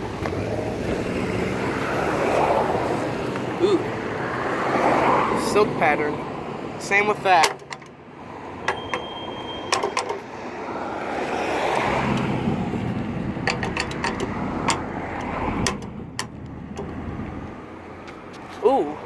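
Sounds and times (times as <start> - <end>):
vehicle passing: 0.0 - 19.0.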